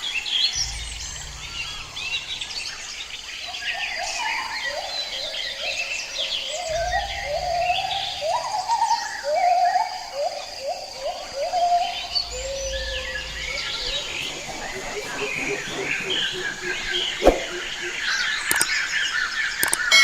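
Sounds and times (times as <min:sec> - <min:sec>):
forest birds chirping: 0:00.0 - 0:20.0
high insect drone: 0:00.0 - 0:20.0
bird call of short rising notes: 0:00.4 - 0:05.3, 0:06.6 - 0:19.0.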